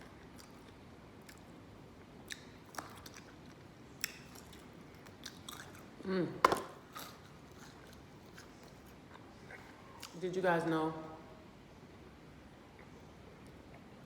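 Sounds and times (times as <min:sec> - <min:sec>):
person chewing chicken wings: 0:02.3 - 0:06.0.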